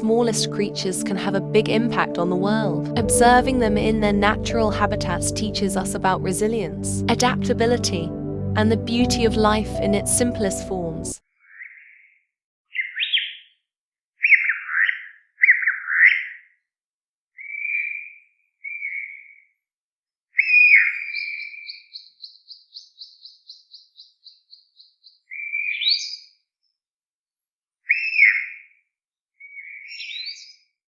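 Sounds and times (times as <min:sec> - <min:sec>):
rapid bird trill: 0:11.4 - 0:13.6, 0:14.2 - 0:16.6, 0:17.4 - 0:19.5, 0:20.4 - 0:26.4, 0:27.8 - 0:28.7.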